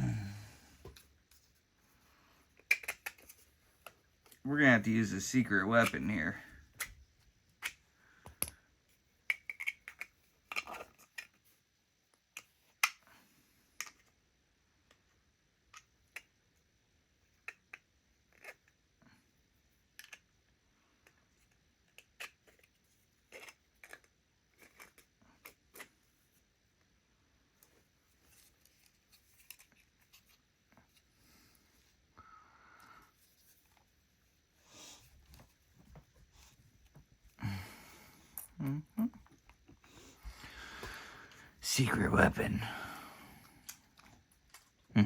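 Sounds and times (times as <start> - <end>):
lock picks clicking and scraping: 9.3 - 11.4.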